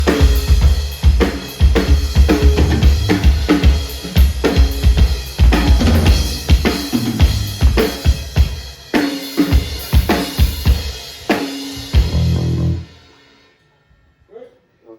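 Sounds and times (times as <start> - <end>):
drum kit playing a groove: 0.0 - 13.4.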